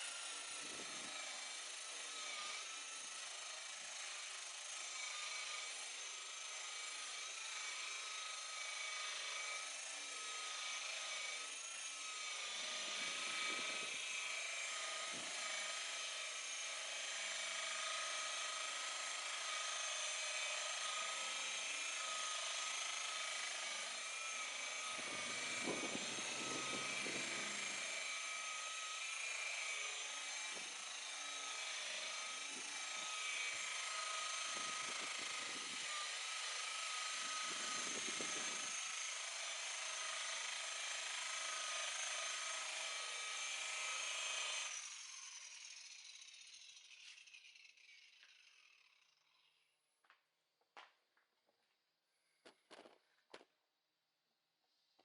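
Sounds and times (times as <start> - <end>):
polisher motor whine: 0.0 - 50.2
low rumbles of polishing pad: 16.9 - 39.6.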